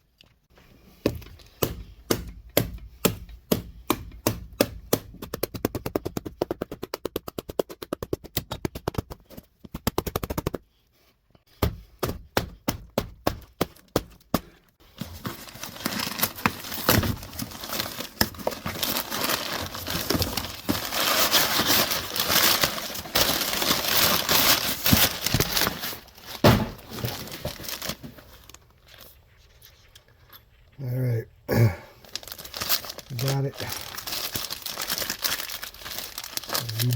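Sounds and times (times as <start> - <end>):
tape and packaging tearing: 15.0 - 28.5, 32.1 - 36.9.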